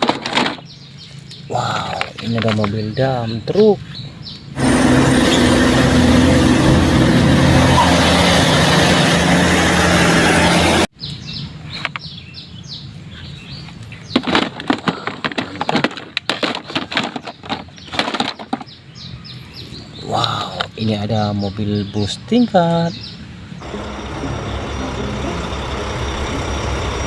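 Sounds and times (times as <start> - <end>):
toy cars clattering: 0.0 - 0.7, 14.1 - 18.8
birds chirping: 0.0 - 6.7, 10.9 - 27.0
truck engine humming: 4.1 - 10.9, 23.2 - 27.0.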